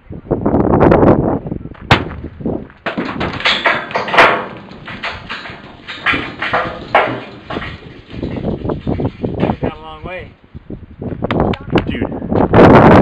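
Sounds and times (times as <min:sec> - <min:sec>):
knocks and thuds: 0:01.9 - 0:09.8
rough noisy bursts: 0:02.9 - 0:10.3.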